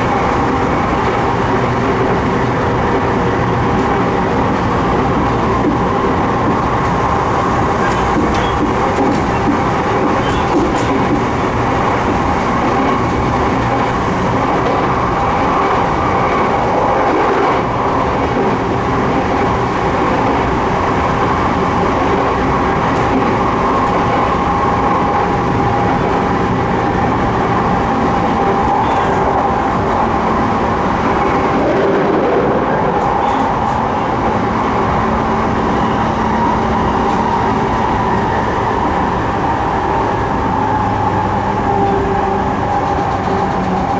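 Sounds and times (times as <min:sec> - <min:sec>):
train wheels rumbling on rails: 0:00.0 - 0:43.9.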